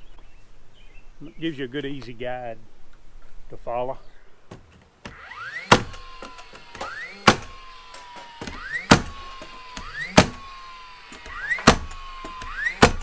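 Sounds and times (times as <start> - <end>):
nail gun firing: 5.0 - 13.0.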